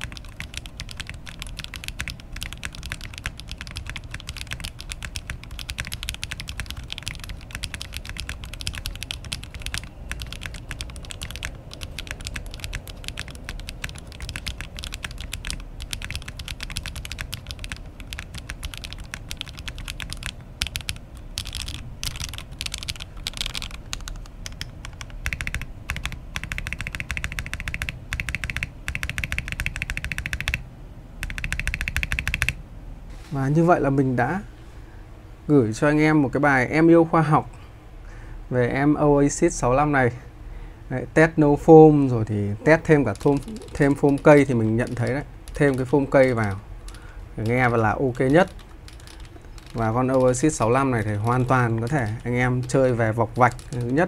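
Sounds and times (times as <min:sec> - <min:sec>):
mechanical keyboard typing: 0:00.0 - 0:30.6, 0:31.2 - 0:32.6, 0:43.0 - 0:54.0.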